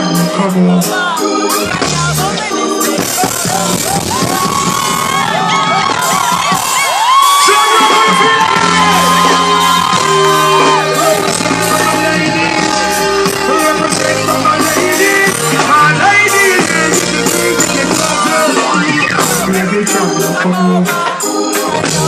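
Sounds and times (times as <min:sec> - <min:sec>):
reggae band playing: 0:00.0 - 0:22.0
person yelling over music: 0:03.2 - 0:16.0.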